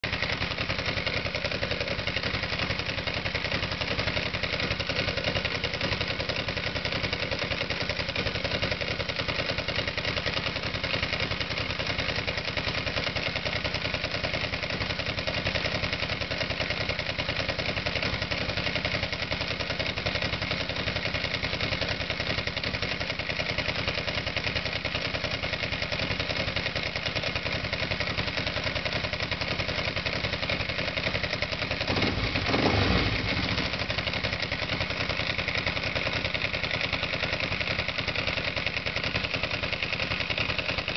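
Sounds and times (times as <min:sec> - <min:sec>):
motorcycle engine idling with misfire: 0:00.0 - 0:40.9.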